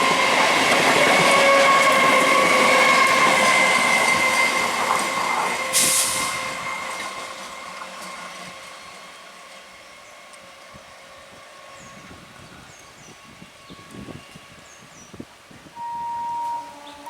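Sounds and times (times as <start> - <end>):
train wheel noise: 0.0 - 14.7
short burst of hiss: 5.7 - 6.5.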